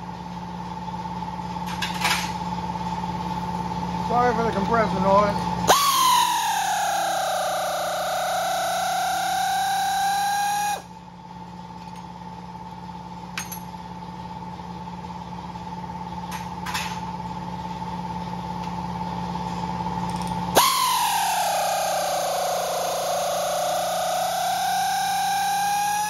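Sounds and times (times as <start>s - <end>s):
steady hum: 3.6s - 11.2s, 20.5s - 26.0s
air compressor motor whining: 4.1s - 11.0s, 20.5s - 26.0s.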